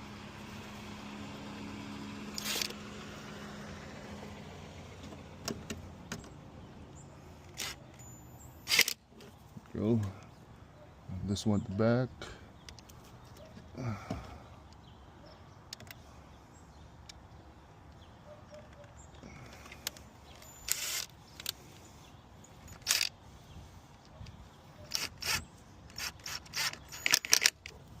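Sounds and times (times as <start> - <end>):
metal tool scraping and clicking: 7.5 - 9.0, 24.8 - 27.8.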